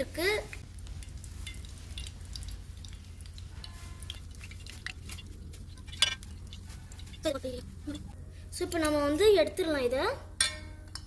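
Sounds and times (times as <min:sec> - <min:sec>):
oil crackling in pan: 0:00.0 - 0:07.5.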